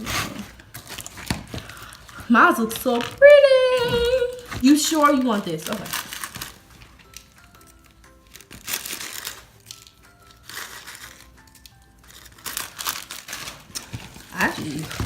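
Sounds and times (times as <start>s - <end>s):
crinkling and rustling: 0.0s - 15.0s.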